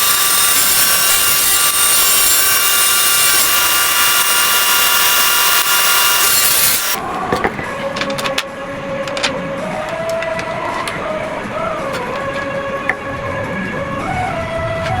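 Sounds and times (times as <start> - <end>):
power tool cutting wood: 0.0 - 7.0.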